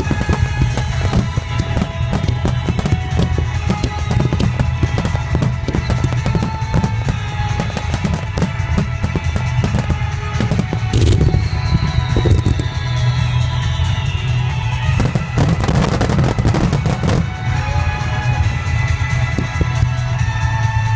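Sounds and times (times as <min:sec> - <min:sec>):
firework shells bursting: 0:00.0 - 0:13.2
low rumble: 0:00.0 - 0:15.6
music: 0:00.0 - 0:20.9.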